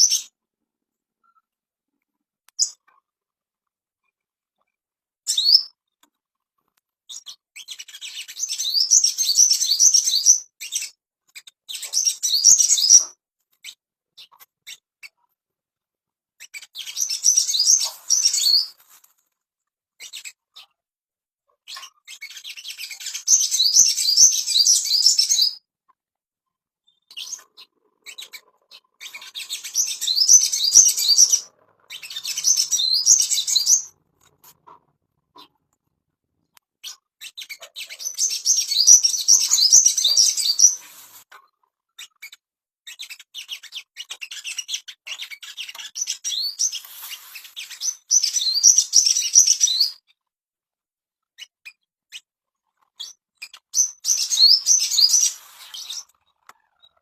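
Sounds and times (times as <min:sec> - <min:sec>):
bird twittering: 0:26.9 - 0:34.0, 0:37.2 - 0:40.8.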